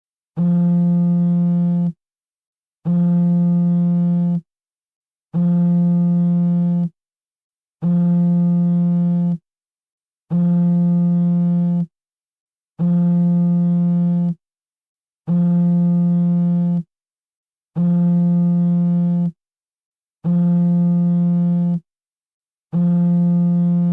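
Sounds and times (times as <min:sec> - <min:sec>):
phone vibration buzzing: 0:22.7 - 0:23.9.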